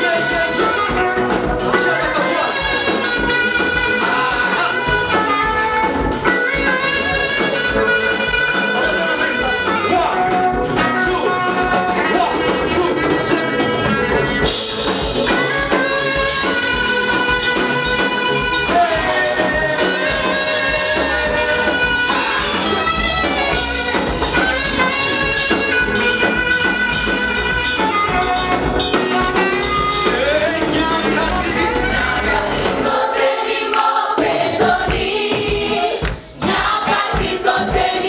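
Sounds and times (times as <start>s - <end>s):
group singing: 0.0s - 6.3s, 15.3s - 24.8s, 29.0s - 38.0s
backing band playing: 0.0s - 38.0s.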